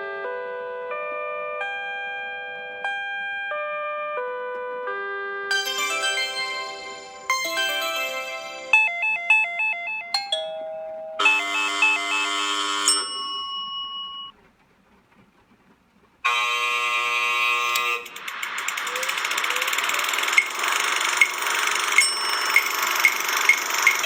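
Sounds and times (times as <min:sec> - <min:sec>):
two-tone electronic melody: 0:00.0 - 0:13.1, 0:18.9 - 0:24.0
short chime: 0:05.5 - 0:12.2
buzzing electronic bell tone: 0:05.5 - 0:14.3, 0:20.4 - 0:24.0
ding-dong doorbell chime: 0:05.5 - 0:14.4, 0:21.1 - 0:24.0
rattling bell ring: 0:12.9 - 0:14.3, 0:20.3 - 0:24.0.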